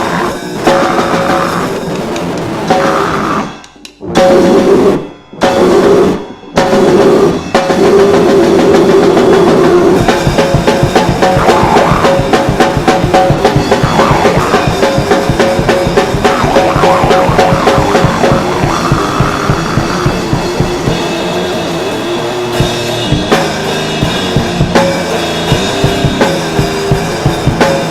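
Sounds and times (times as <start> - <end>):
rock band playing: 0.0 - 27.9
fast busy drumbeat: 6.4 - 27.9.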